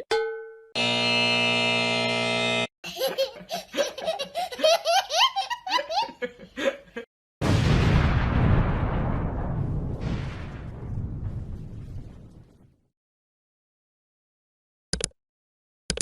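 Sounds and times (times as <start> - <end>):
held electronic chord: 0.8 - 2.7
giggling laughter: 2.8 - 7.1
explosion-like rushing noise: 7.4 - 12.8.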